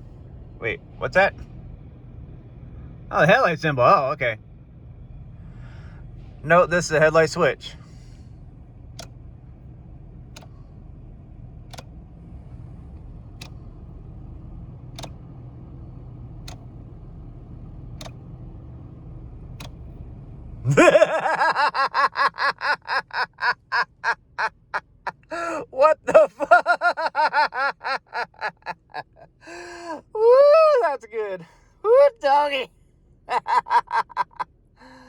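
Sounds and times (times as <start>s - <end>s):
car humming: 0.0s - 35.0s
light clicks: 14.9s - 15.3s, 15.9s - 17.1s, 17.8s - 18.4s.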